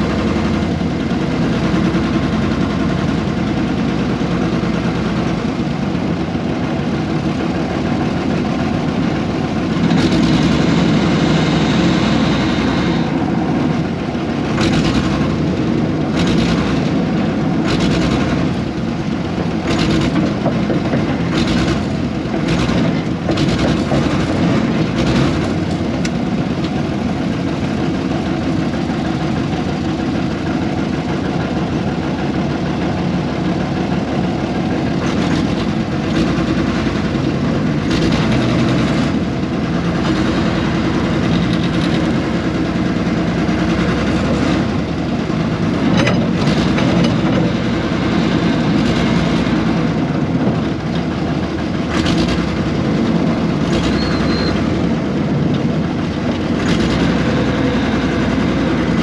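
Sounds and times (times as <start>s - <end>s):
excavator diesel engine running: 0.0s - 59.0s.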